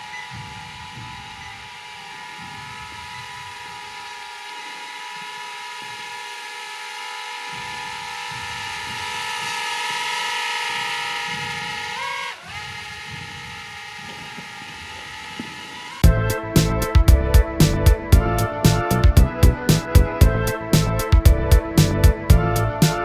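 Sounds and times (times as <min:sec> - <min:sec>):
drone propellers whining: 0:00.0 - 0:23.0.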